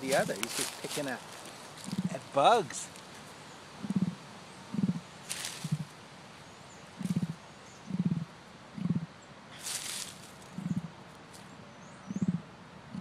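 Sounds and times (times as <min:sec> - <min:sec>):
bird giving low grunts: 0:01.8 - 0:02.3, 0:03.8 - 0:05.9, 0:07.0 - 0:09.2, 0:10.6 - 0:11.0.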